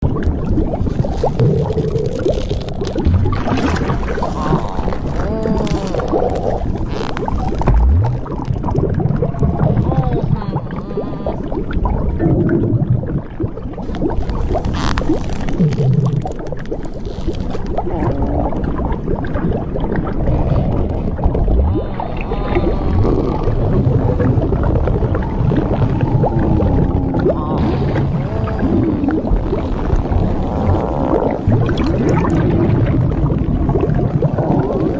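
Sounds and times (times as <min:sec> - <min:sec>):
dense low rumbling: 0:00.0 - 0:13.2, 0:17.6 - 0:34.9
liquid gurgling and sloshing: 0:00.0 - 0:34.9
wavering creaking glides: 0:03.7 - 0:08.2, 0:13.8 - 0:18.8, 0:20.2 - 0:32.0
squeaky creaky glides: 0:04.0 - 0:07.7, 0:13.8 - 0:18.6.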